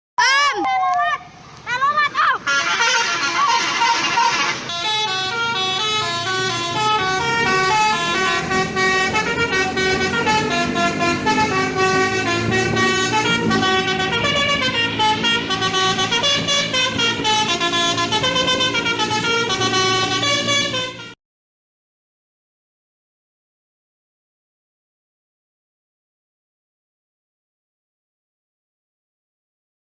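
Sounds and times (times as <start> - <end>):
multi-tone bus horn melody: 2.4 - 21.2.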